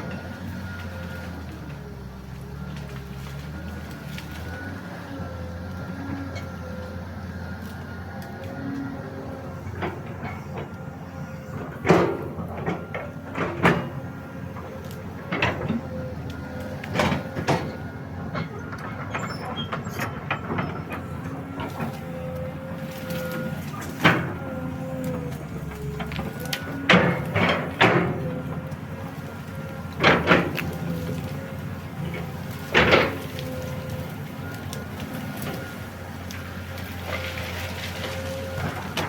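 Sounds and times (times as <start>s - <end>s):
hydraulic excavator running: 0.0s - 39.0s
sharp cracks and knocks: 21.6s - 35.6s.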